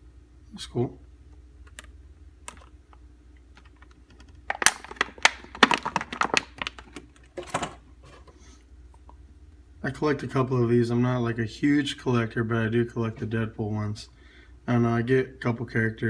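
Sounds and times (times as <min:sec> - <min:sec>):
packaging clicking and crackling: 0:02.5 - 0:02.7, 0:03.5 - 0:07.8.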